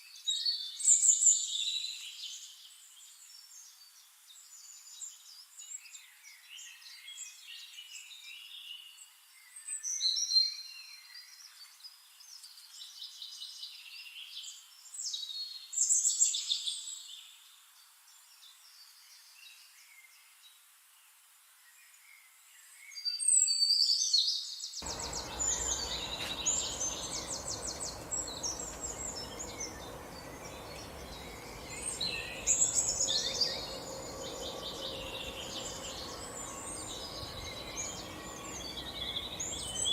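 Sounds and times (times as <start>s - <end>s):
birds chirping and trilling: 24.8s - 39.9s
low background noise: 24.8s - 39.9s.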